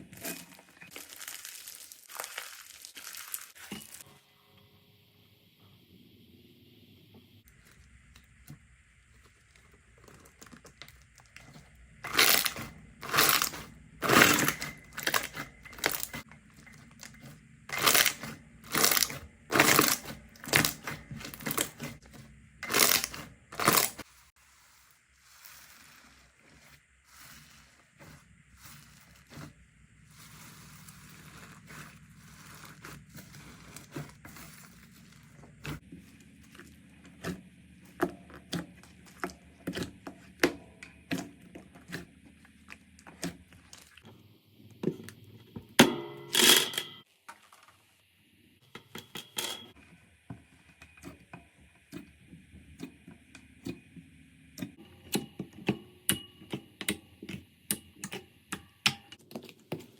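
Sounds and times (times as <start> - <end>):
slime clicking and crackling: 0.9 - 4.0.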